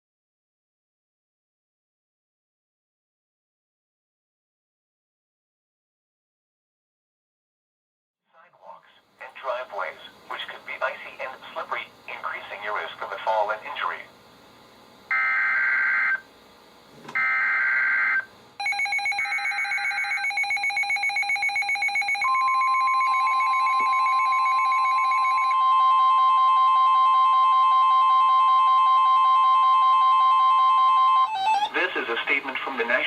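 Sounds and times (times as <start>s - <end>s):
steady warning alarm tone: 15.1s - 16.2s, 17.2s - 31.8s
weather radio alarm beeps: 17.2s - 31.8s.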